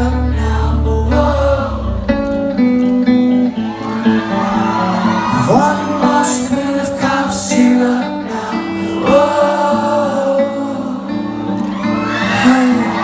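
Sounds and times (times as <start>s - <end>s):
man singing long notes: 5.0s - 13.0s.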